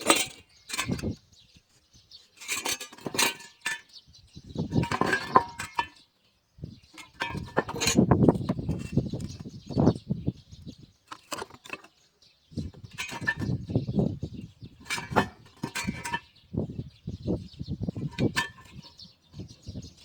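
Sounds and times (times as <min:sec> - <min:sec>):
birds chirping faintly: 0:00.0 - 0:20.0
objects being handled: 0:02.4 - 0:03.9, 0:04.6 - 0:06.0, 0:06.9 - 0:09.5, 0:11.1 - 0:12.0, 0:12.7 - 0:13.7, 0:14.8 - 0:16.2.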